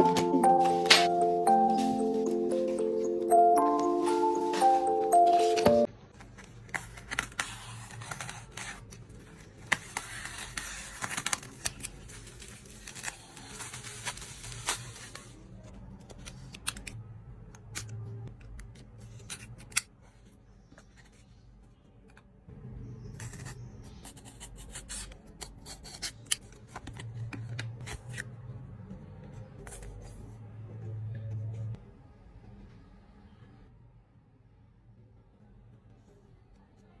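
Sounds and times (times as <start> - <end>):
packaging rustling: 6.2 - 15.3.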